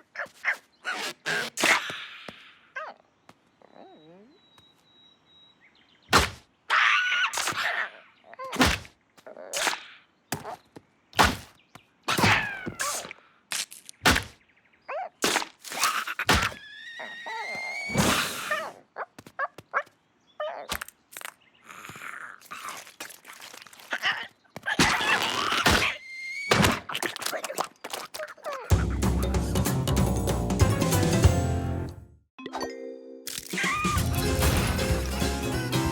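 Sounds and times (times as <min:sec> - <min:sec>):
cartoon thuds and whacks: 0:06.1 - 0:06.4, 0:08.5 - 0:08.9, 0:11.2 - 0:13.1, 0:14.0 - 0:14.4, 0:15.2 - 0:16.6, 0:24.8 - 0:27.0, 0:34.4 - 0:35.2.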